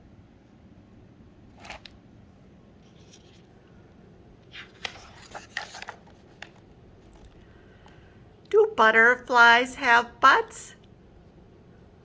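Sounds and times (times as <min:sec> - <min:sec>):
paper pages rustling: 0:01.5 - 0:02.0, 0:02.8 - 0:03.7, 0:04.4 - 0:07.6.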